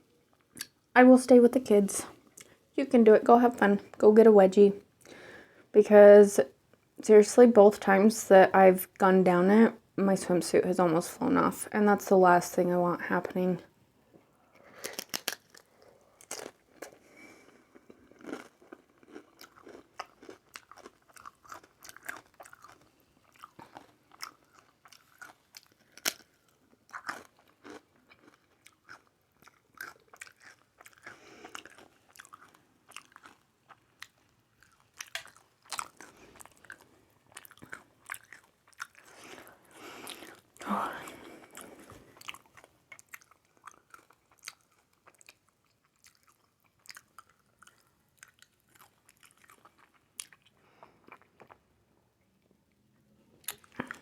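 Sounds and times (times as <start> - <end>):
crunchy bites and chewing: 14.6 - 40.5, 41.2 - 51.6.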